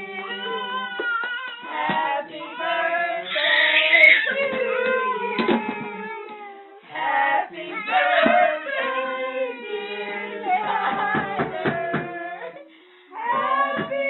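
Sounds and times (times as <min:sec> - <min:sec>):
several voices singing: 0:00.0 - 0:06.2, 0:06.8 - 0:14.0.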